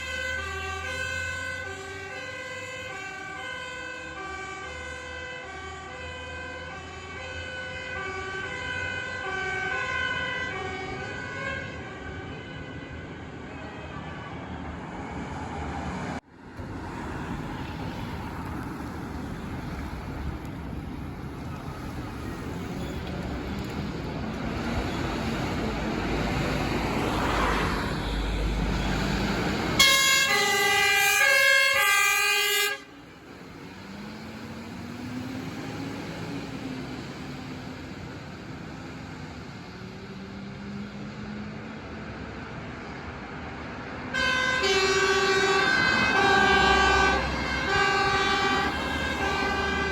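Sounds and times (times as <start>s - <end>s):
two-tone siren horn: 0.0s - 15.3s, 27.3s - 33.1s, 44.1s - 49.9s
fire engine passing: 0.0s - 49.9s.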